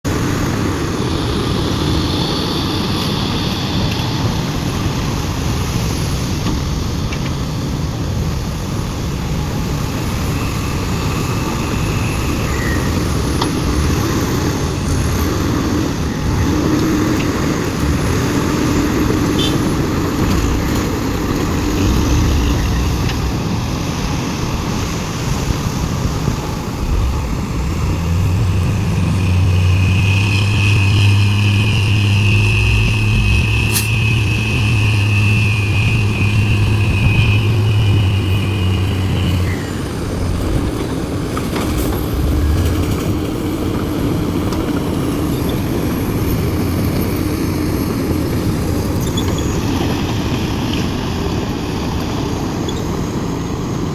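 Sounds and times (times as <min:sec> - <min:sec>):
heavy diesel engines rumbling: 0:00.0 - 0:53.9
faint high whines: 0:09.5 - 0:44.2.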